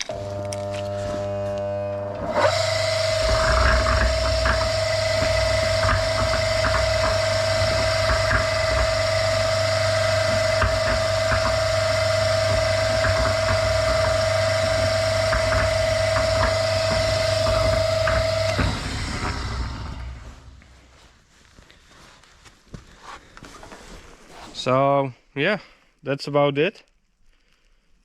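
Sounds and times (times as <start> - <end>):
electric motor whining: 0.0 - 20.9
drum rattling: 2.5 - 20.9.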